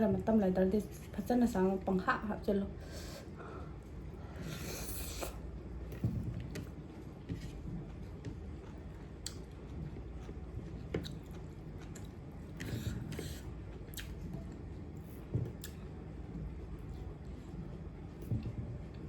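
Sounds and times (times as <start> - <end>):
person chewing food: 3.8 - 16.1.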